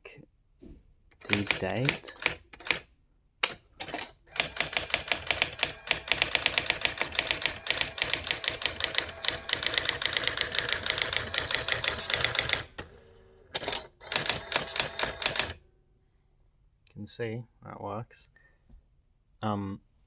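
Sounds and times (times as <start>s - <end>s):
typewriter print strikes: 1.2s - 2.8s, 3.4s - 15.6s.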